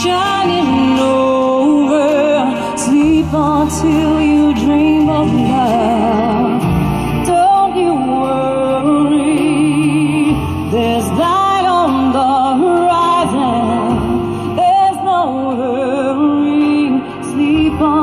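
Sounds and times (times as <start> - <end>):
music accompaniment: 0.0 - 18.0
person singing with vibrato: 0.0 - 18.0.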